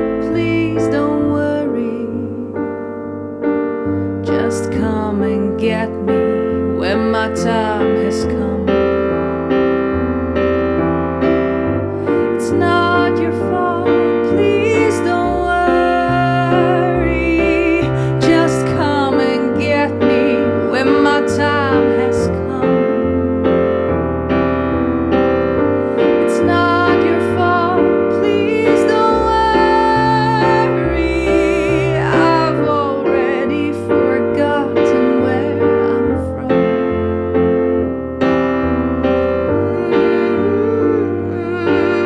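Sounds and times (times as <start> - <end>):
electric piano chords: 0.0 - 42.0
sliding melodic lines: 0.0 - 42.0.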